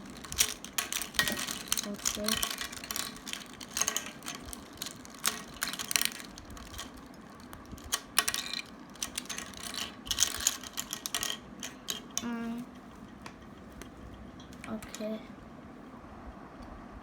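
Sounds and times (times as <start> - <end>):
plastic cube pieces clicking: 0.0 - 12.3.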